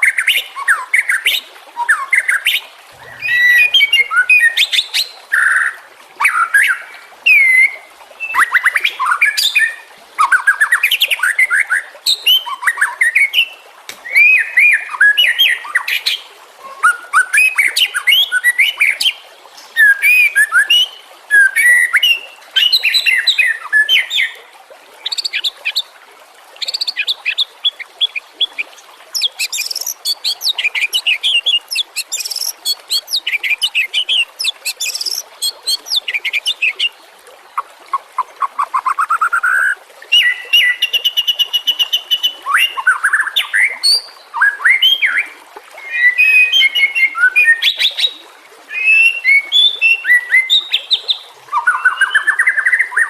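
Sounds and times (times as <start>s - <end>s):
bird singing varied song: 3.0s - 4.7s, 29.2s - 36.9s.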